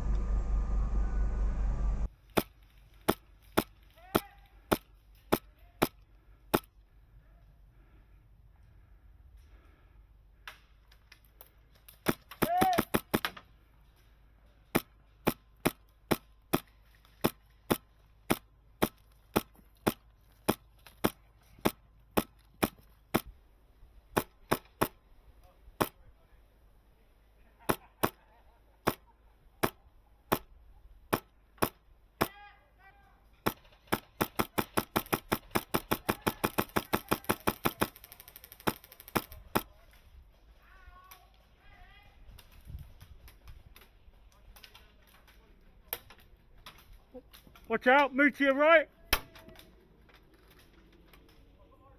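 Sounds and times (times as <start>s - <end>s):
airsoft gun automatic fire: 33.9s - 39.6s.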